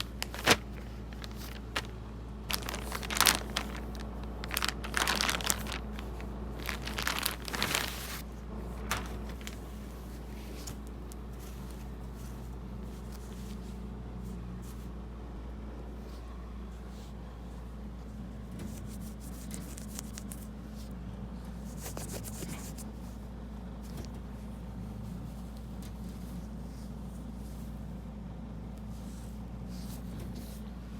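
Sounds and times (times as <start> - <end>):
packaging crinkling and rustling: 0.0 - 11.8, 19.6 - 20.5
steady low hum: 0.0 - 30.9.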